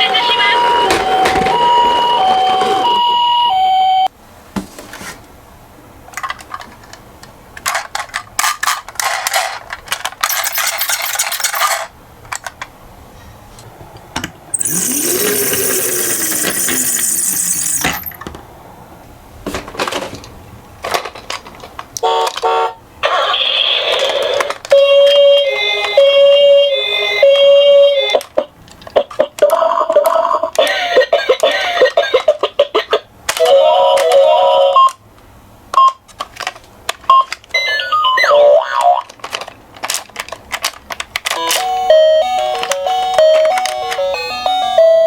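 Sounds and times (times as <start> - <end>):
two-tone ambulance siren: 0.2 - 4.1
toy cars clattering down slope: 7.6 - 12.6, 14.5 - 18.2
stepped electronic tones: 14.6 - 18.2.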